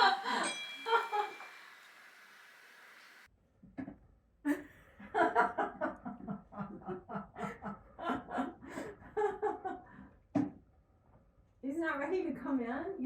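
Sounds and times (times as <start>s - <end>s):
person laughing: 0.0s - 1.5s.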